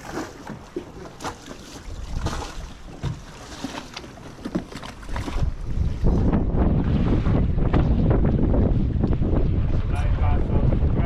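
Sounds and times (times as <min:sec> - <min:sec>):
wind and water noise: 0:00.0 - 0:11.0
wind rumble on microphone: 0:01.8 - 0:03.3, 0:04.5 - 0:11.0.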